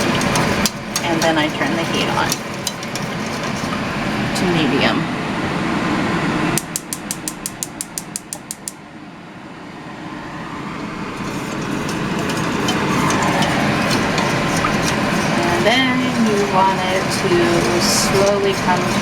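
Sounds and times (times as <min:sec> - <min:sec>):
burner steady noise: 0:00.0 - 0:19.0
stove ignition clicks: 0:06.6 - 0:08.8.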